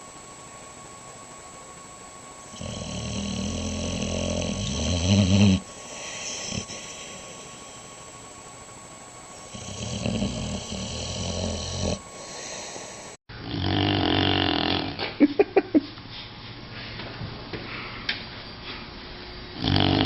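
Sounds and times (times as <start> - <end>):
dog snorting: 2.5 - 7.5, 9.5 - 15.0, 19.6 - 20.0
dog snoring: 2.5 - 8.0, 9.4 - 15.0, 19.6 - 20.0.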